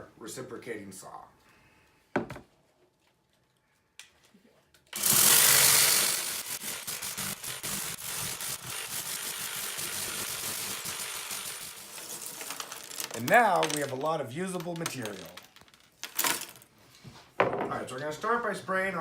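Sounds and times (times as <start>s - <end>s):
reciprocating saw cutting wicker: 5.0s - 12.2s.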